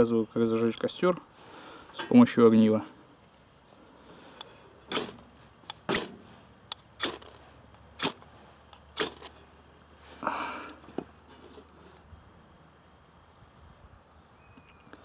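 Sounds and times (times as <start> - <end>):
knife scraping ferro rod: 7.0 - 8.3.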